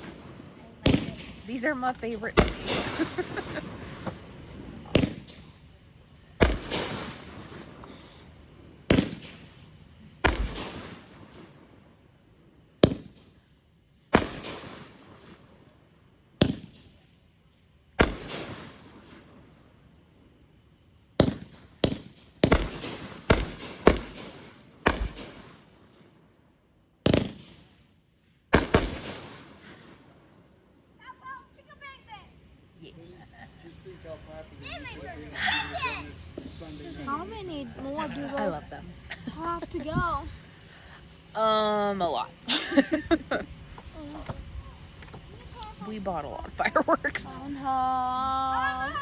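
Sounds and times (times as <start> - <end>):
fireworks bursting with echo: 0.0 - 17.1, 17.9 - 19.7, 21.1 - 26.4, 27.0 - 31.6.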